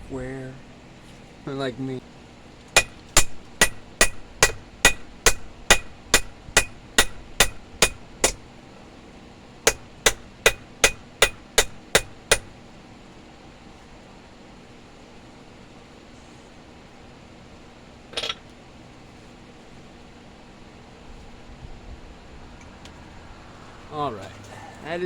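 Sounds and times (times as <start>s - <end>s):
hammer striking steel on anvil: 2.8s - 8.5s, 9.7s - 12.5s.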